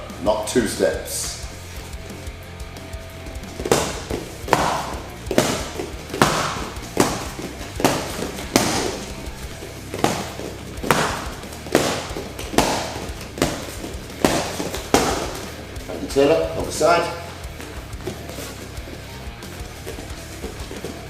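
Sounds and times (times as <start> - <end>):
punches smacking training pads: 3.4 - 18.6.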